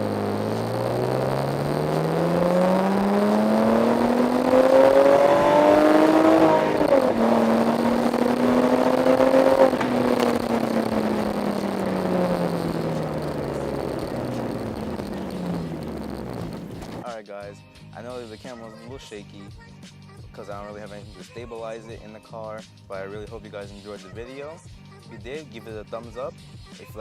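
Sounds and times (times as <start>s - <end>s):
car engine accelerating: 0.0s - 17.0s.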